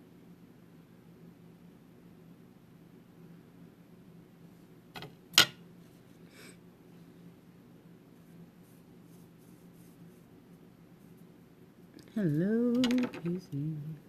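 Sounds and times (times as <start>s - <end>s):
steady low hum: 0.0s - 14.0s
soft rubbing and scratching: 8.1s - 11.5s.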